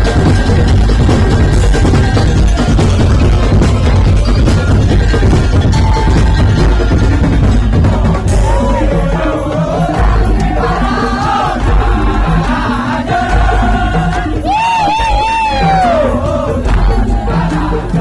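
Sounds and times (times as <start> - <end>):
percussion with heavy bass: 0.0 - 18.0
sliding melody line: 1.7 - 11.7.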